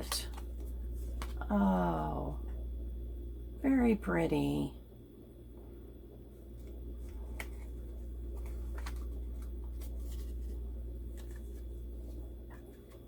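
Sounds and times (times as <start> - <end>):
steady low hum: 0.0 - 13.0
paper rustling and clicks: 6.6 - 13.0.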